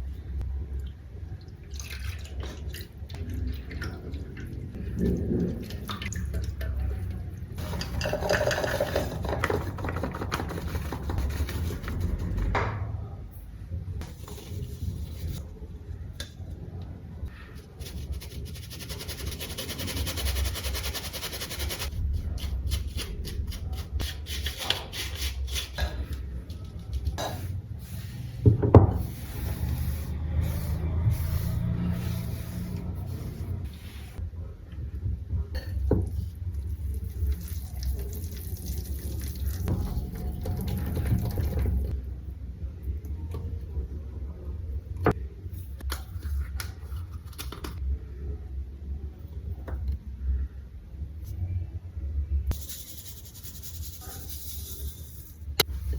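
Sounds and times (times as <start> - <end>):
steady low hum: 2.7 - 37.4
utensils rubbing and scraping: 29.0 - 34.2.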